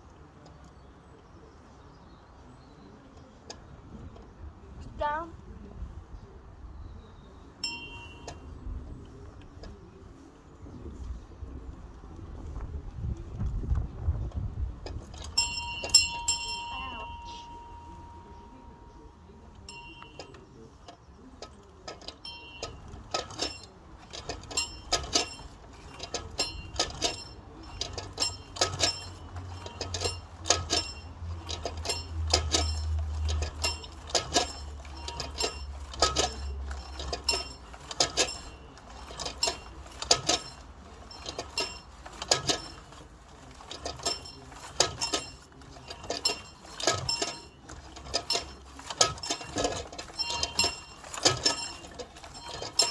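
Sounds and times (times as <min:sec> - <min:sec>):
high-pitched bell ringing: 0:15.4 - 0:18.5.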